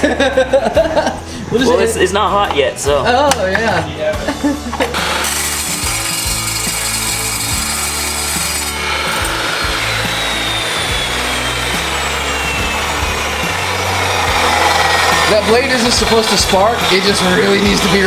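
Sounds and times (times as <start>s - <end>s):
low background music: 0.0s - 18.0s
power saw cutting metal: 4.5s - 18.0s.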